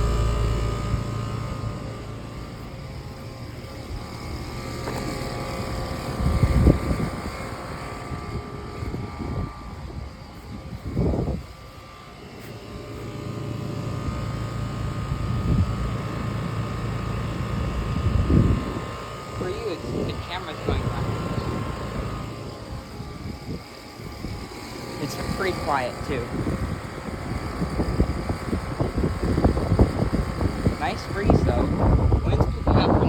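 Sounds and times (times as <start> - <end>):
air conditioner hum: 0.0 - 33.0
wind on microphone: 6.0 - 11.8, 15.1 - 16.0, 17.4 - 33.0.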